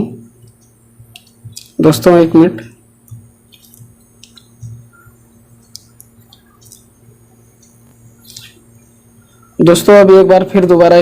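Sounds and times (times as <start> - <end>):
low steady hum: 0.0 - 11.0
small clicks and taps: 0.4 - 1.8, 3.0 - 6.9.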